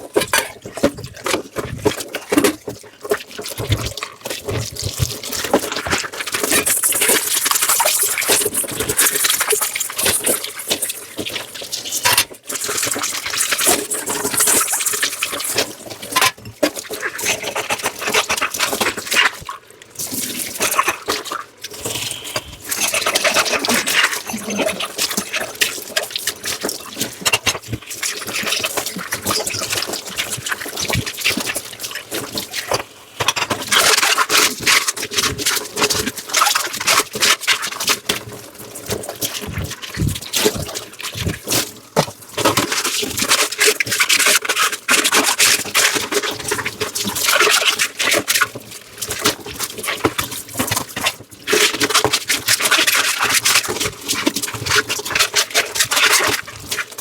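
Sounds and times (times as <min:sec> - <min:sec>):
running and splashing water: 0:00.0 - 0:57.0
scrubbing dishes: 0:20.2 - 0:29.9.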